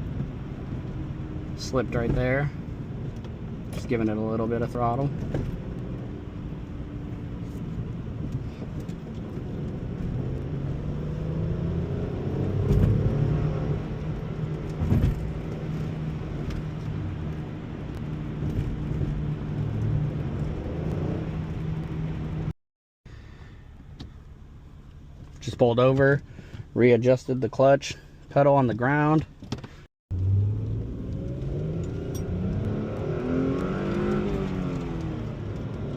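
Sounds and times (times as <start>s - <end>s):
car engine driving: 0.0s - 35.9s.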